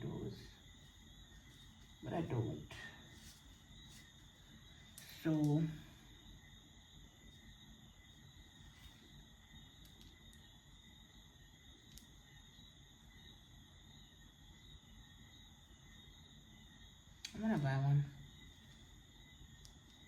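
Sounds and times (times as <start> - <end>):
faint clicks: 9.8 - 10.4, 11.9 - 12.2.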